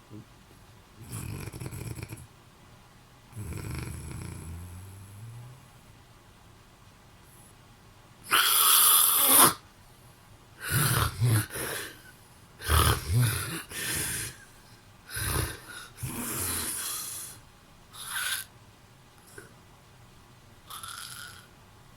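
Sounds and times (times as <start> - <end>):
man snoring with rattle: 1.0 - 2.3, 3.3 - 5.7, 8.3 - 9.6, 10.6 - 14.4, 15.1 - 17.4, 18.0 - 18.5, 20.7 - 21.5.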